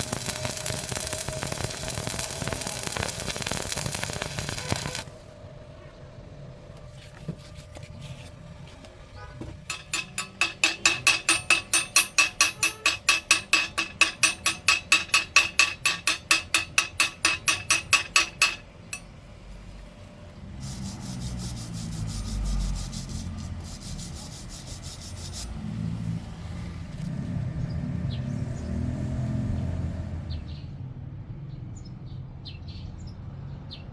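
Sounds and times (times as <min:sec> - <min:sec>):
hand tool rasping on metal: 0:09.7 - 0:19.0, 0:20.6 - 0:25.6.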